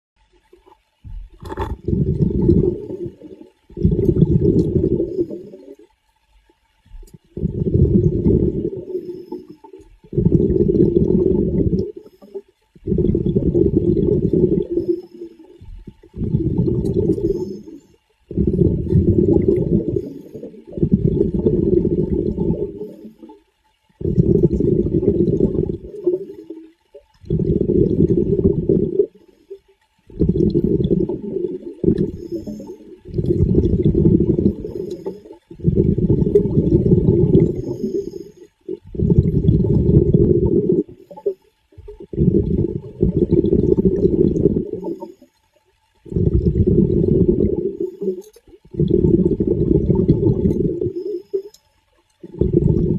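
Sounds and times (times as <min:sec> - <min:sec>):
muffled water sloshing: 0:12.8 - 0:45.2.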